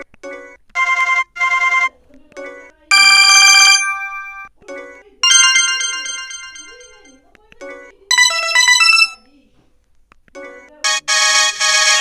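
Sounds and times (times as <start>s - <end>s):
mobile phone ringtones: 0.8s - 1.9s, 2.9s - 4.5s, 5.2s - 7.1s, 8.1s - 9.2s, 10.9s - 12.0s.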